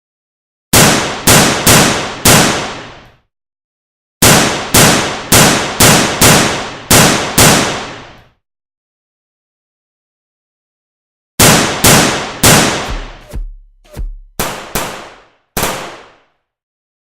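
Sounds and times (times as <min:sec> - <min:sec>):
bomb explosions: 0:11.7 - 0:15.2.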